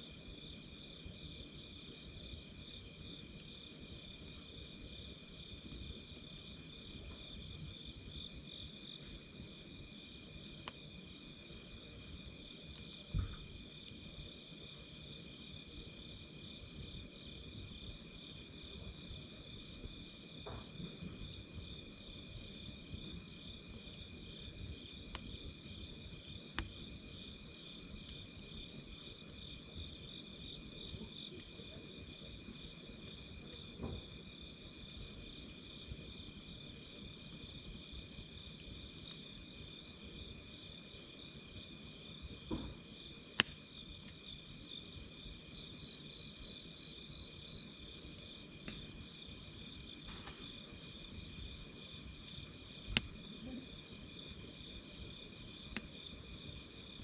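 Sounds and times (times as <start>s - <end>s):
campfire crackle and rumble: 0.0s - 57.0s
insects trilling: 1.6s - 57.0s
burning wood pops: 5.4s - 14.3s, 18.6s - 36.0s, 41.3s - 56.6s.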